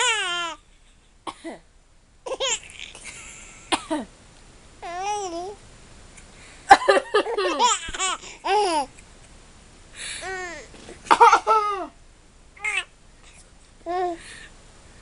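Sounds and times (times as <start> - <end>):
person coughing: 1.3 - 1.6, 3.7 - 4.1.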